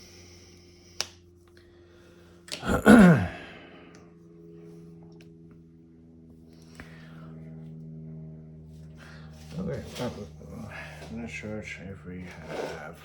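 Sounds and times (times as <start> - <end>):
person sighing: 2.6 - 3.8.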